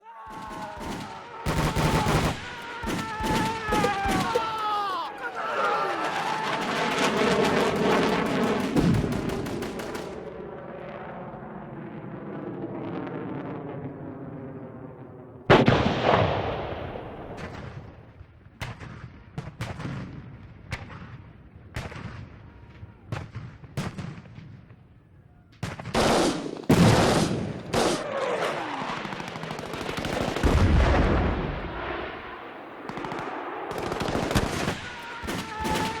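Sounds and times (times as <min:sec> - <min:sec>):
gunshots: 0:00.1 - 0:10.4, 0:25.6 - 0:36.0
rapid gunfire: 0:00.2 - 0:10.3, 0:25.6 - 0:36.0
explosion blasts: 0:00.3 - 0:18.2, 0:30.3 - 0:36.0.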